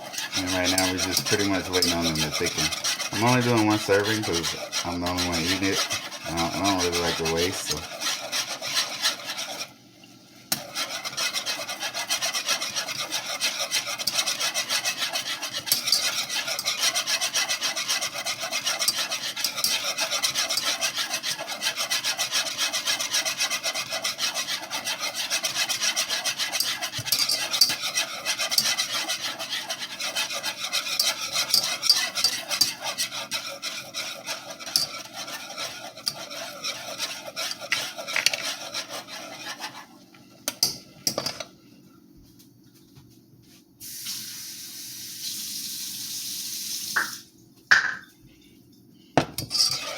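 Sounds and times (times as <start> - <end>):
spoon scraping pot: 0.0 - 9.8, 10.5 - 41.5, 49.2 - 49.9.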